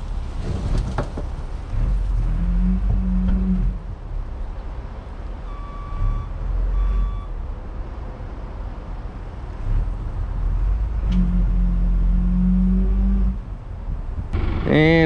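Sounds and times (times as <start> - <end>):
reversing alarm beeps: 5.4 - 7.4
truck engine running: 9.3 - 15.0.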